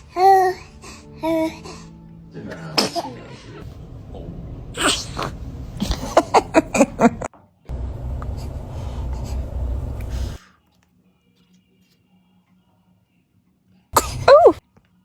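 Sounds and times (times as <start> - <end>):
baby sneezing: 2.8 - 3.2, 4.8 - 6.4, 14.0 - 14.6
steady low rumble: 3.6 - 10.4.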